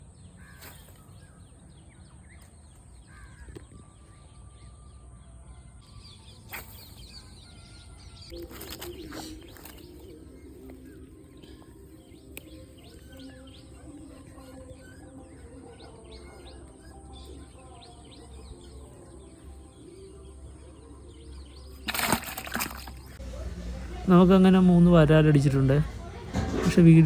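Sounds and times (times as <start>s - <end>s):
birds chirping and calling: 0.0s - 27.0s
low hum: 21.4s - 26.8s.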